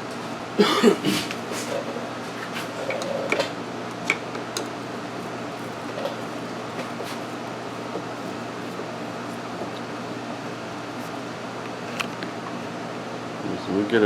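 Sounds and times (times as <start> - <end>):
steady hum: 0.0 - 14.0
rustling and knocking on plastic: 4.1 - 9.9.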